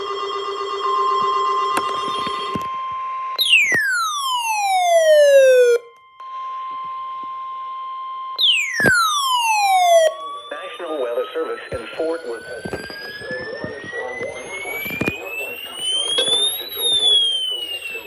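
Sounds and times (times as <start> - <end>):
falling siren-like sweep: 3.4 - 5.9, 8.4 - 18.0
high electronic alert tone: 3.4 - 5.9, 8.4 - 10.3.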